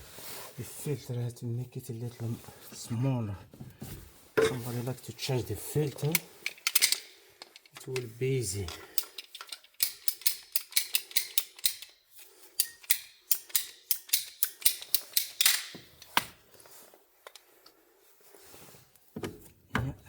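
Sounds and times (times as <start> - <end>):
hand tool mechanical clicks: 8.7 - 16.3.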